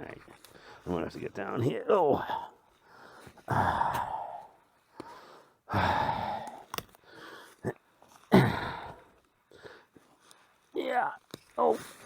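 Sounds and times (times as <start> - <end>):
man sighing heavily: 3.5 - 6.7, 8.3 - 9.1.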